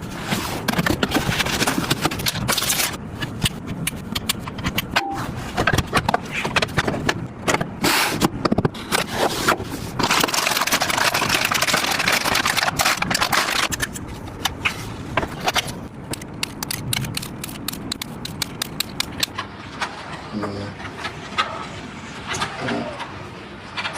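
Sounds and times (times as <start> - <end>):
sharp clicks and knocks: 15.2 - 20.0.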